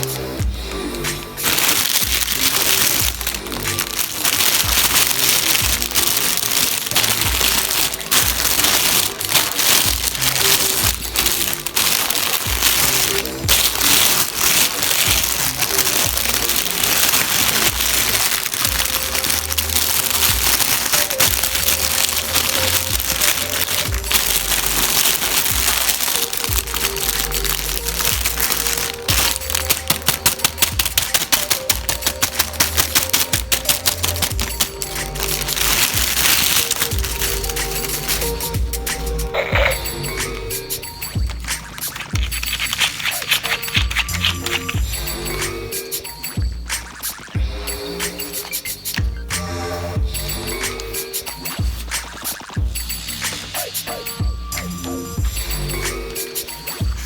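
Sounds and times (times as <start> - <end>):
background music with bass: 0.0 - 57.0
fast sharp clicks: 1.4 - 39.3, 40.1 - 45.0
toy packaging crinkling: 1.4 - 46.4.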